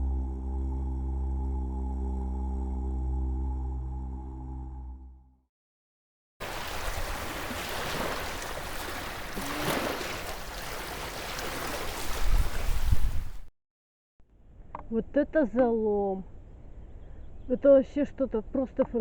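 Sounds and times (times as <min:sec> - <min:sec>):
wind blowing over microphone: 0:06.5 - 0:13.5.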